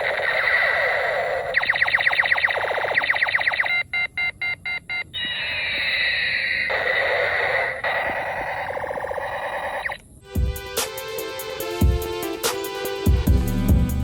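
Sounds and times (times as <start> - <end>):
falling electronic zap: 0.0 - 3.7, 5.3 - 10.0
warbling electronic tone: 0.0 - 3.8, 5.2 - 10.0
electronic chirps and beeps: 0.0 - 10.0.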